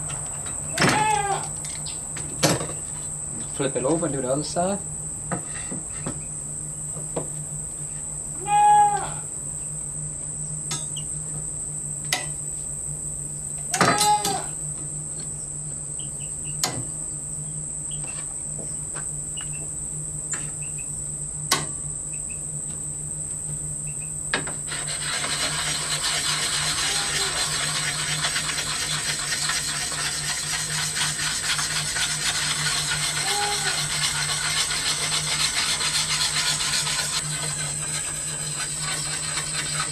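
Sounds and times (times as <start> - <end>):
high insect trill: 0.1 - 39.9
sharpening stone scraping blade: 24.8 - 39.9.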